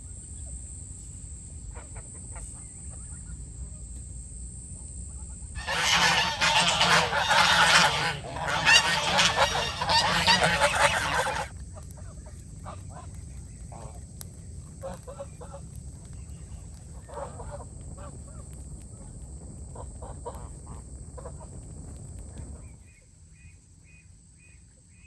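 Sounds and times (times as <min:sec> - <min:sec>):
geese honking: 0:05.6 - 0:11.5, 0:16.9 - 0:18.4.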